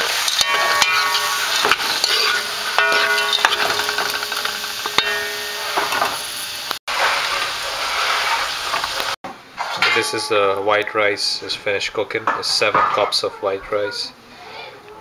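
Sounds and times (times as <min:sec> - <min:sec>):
utensil scraping a pan: 0:00.0 - 0:06.2, 0:09.6 - 0:10.6
vegetables sizzling in oil: 0:00.0 - 0:09.8.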